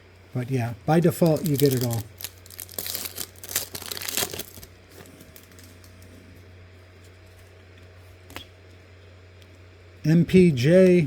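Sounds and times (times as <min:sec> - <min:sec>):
faint steady hum: 0:00.0 - 0:11.0
foil wrapper crinkling: 0:01.0 - 0:06.0
card handling: 0:01.1 - 0:06.1.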